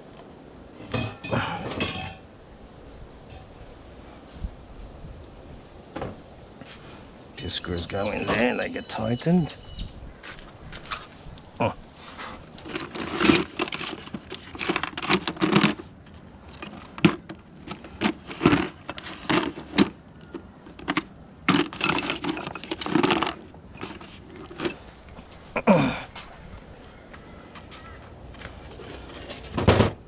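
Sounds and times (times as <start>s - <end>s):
metal parts and tools clinking: 12.6s - 20.0s, 20.6s - 24.9s.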